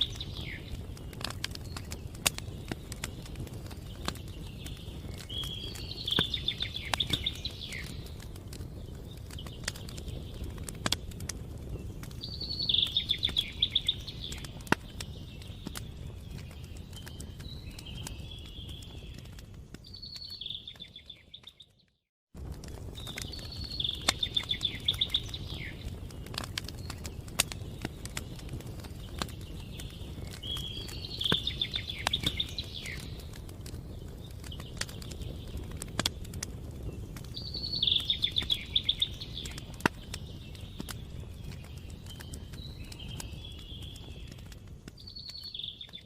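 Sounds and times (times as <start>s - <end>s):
campfire crackling and popping: 0.0s - 46.0s
songbird trilling: 23.6s - 25.8s, 37.4s - 39.7s.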